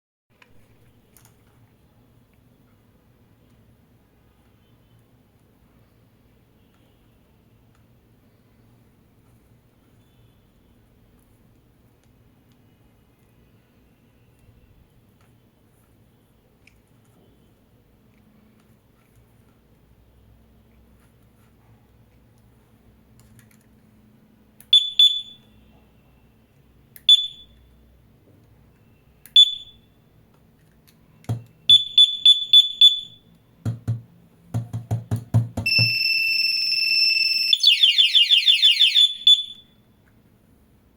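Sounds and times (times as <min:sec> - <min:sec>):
bike alarm beeping: 0:24.8 - 0:25.5, 0:27.1 - 0:27.5, 0:29.4 - 0:29.8, 0:31.7 - 0:33.3, 0:35.7 - 0:39.7
two-tone alarm wail: 0:35.7 - 0:39.6.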